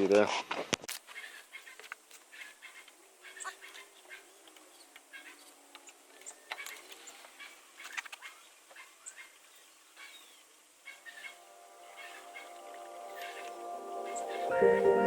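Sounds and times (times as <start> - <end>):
bird calls and clucks: 1.1 - 11.4.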